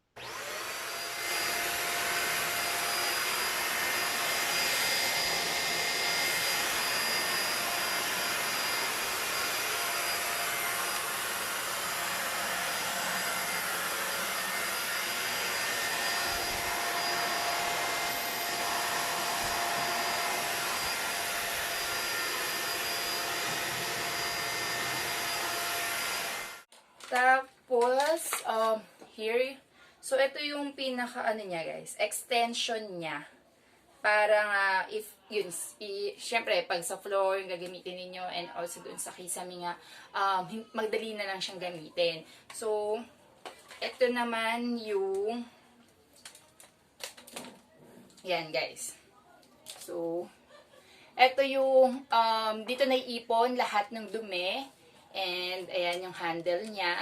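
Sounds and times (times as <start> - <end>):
vacuum cleaner running: 0.0 - 26.7.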